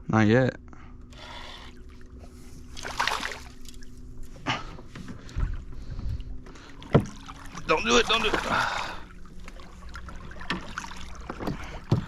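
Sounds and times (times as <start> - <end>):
steady low hum: 0.0 - 12.0
water splashing: 1.9 - 4.0, 5.2 - 12.0.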